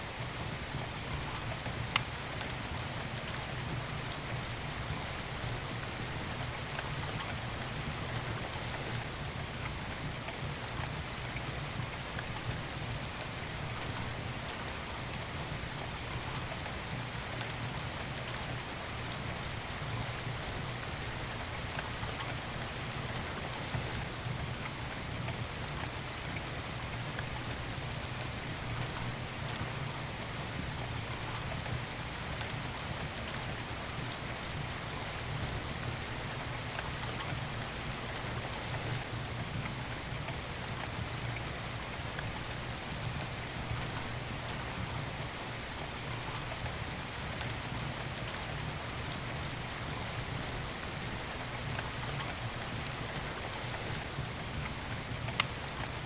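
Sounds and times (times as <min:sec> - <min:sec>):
steady rain falling: 0:00.0 - 0:56.0
faint clicks: 0:01.9 - 0:02.6, 0:51.7 - 0:56.0.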